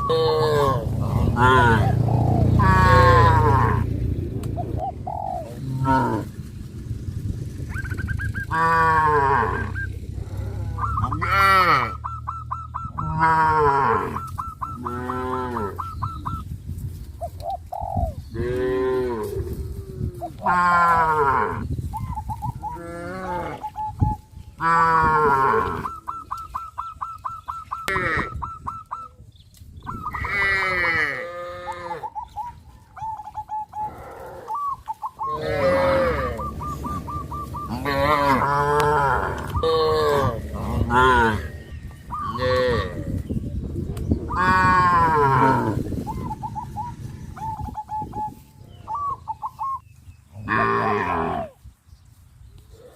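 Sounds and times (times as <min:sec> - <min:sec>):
cattle mooing: 0:00.0 - 0:03.9, 0:05.6 - 0:06.4, 0:08.5 - 0:12.0, 0:13.0 - 0:15.8, 0:20.4 - 0:21.6, 0:22.7 - 0:23.7, 0:24.6 - 0:26.0, 0:30.1 - 0:32.2, 0:33.8 - 0:34.6, 0:35.3 - 0:41.7, 0:42.3 - 0:43.2, 0:44.4 - 0:45.9, 0:50.4 - 0:51.5.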